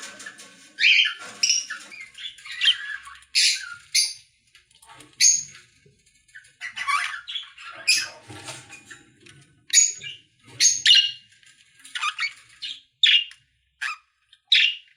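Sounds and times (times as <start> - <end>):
lovebirds squawking and chirping: 0.8 - 4.2, 5.2 - 5.6, 6.4 - 8.2, 9.7 - 11.2, 11.9 - 14.9.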